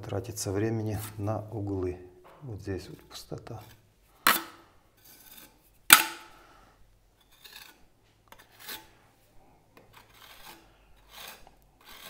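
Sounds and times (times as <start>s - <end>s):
blade scraping wet plaster: 2.9s - 6.3s, 7.2s - 9.0s, 9.8s - 12.0s.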